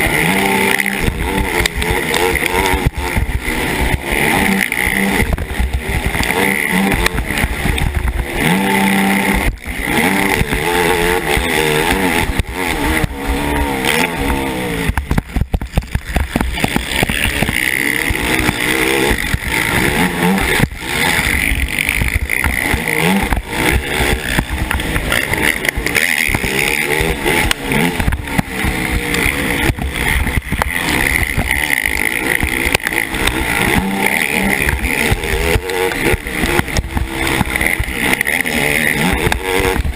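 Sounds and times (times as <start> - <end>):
quad engine revving: 0.0 - 39.9.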